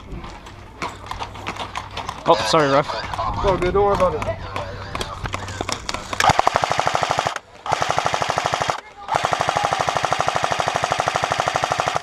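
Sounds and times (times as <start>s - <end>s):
airsoft gun firing full auto: 6.2s - 12.0s.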